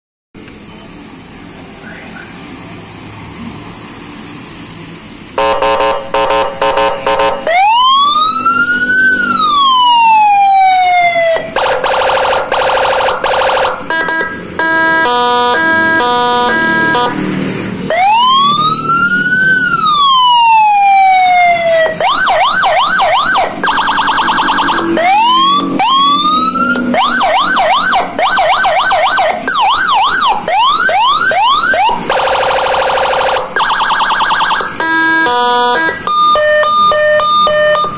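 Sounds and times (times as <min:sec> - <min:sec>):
buzzing horn blasts: 0:05.4 - 0:07.6, 0:11.5 - 0:17.8, 0:34.8 - 0:37.9
electronic siren cycling tones: 0:05.4 - 0:37.9.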